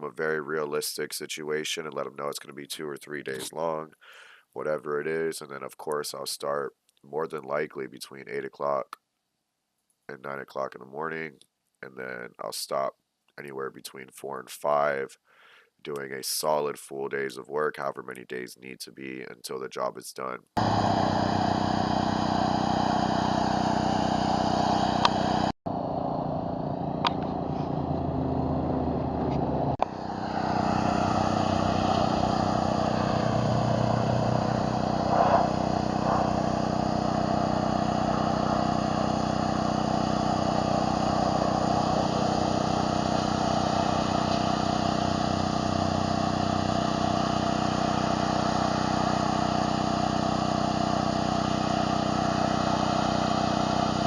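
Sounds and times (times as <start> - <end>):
pressure washer engine running: 20.6 - 25.5, 26.3 - 54.0
water spray hissing: 29.8 - 54.0.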